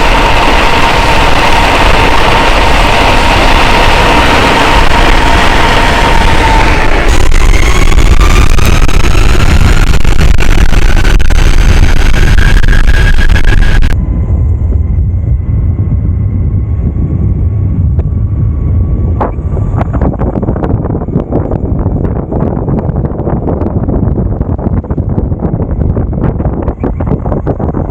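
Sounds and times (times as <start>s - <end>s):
electric motor whine: 0.0s - 21.6s
wind buffeting microphone: 0.0s - 27.9s.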